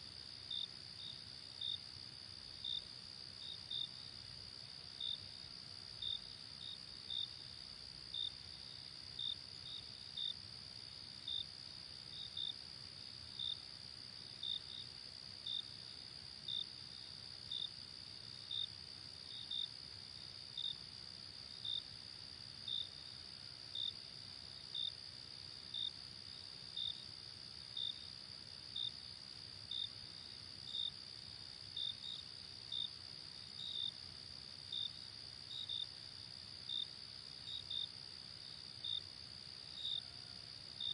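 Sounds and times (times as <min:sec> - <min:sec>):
insect chirps: 0:00.1 - 0:40.9.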